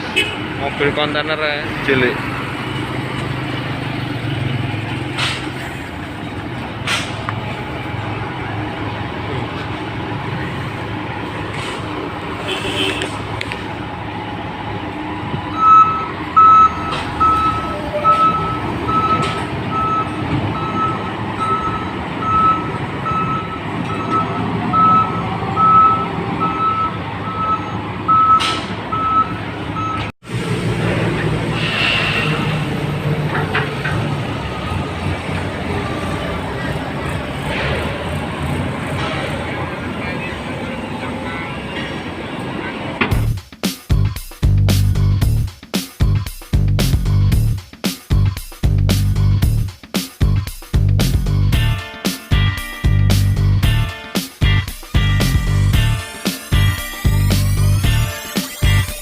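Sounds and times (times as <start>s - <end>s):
diesel engine rumble: 0.0s - 59.0s
reversing alarm beeping: 15.4s - 30.1s.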